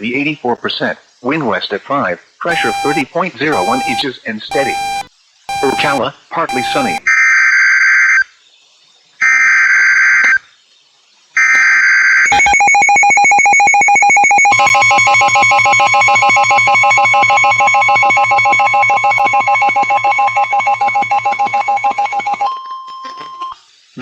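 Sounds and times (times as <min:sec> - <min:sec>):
pulsing attention tone: 0:02.5 - 0:07.1
buzzy digital data bursts: 0:03.6 - 0:07.0.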